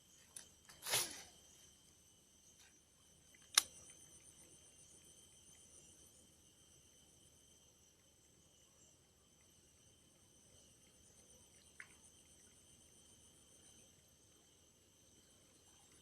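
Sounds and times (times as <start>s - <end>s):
sharp click: 3.5s - 3.8s.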